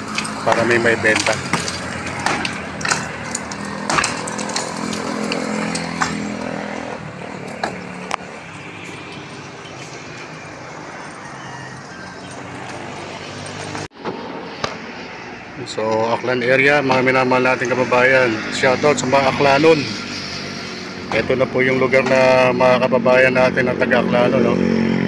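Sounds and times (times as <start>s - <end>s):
sharp knocks: 0.1s - 7.9s.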